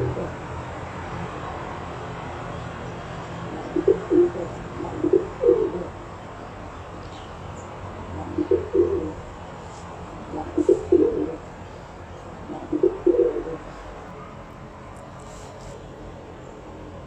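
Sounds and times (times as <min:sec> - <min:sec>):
pigeon cooing: 0:00.0 - 0:00.4, 0:03.5 - 0:06.0, 0:08.2 - 0:09.3, 0:10.3 - 0:11.5, 0:12.5 - 0:13.7.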